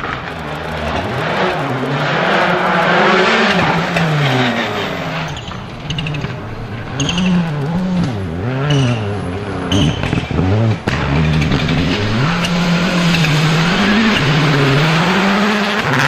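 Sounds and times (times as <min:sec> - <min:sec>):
rally car engine revving: 0:00.0 - 0:16.0.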